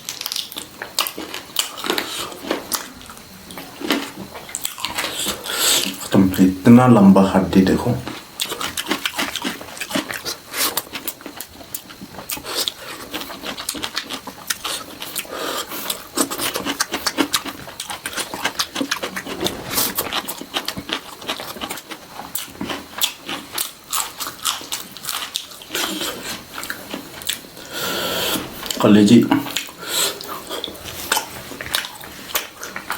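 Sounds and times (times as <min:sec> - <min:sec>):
person chewing and lip-smacking: 0:00.1 - 0:06.0, 0:08.1 - 0:19.2, 0:20.1 - 0:27.4, 0:29.5 - 0:32.9.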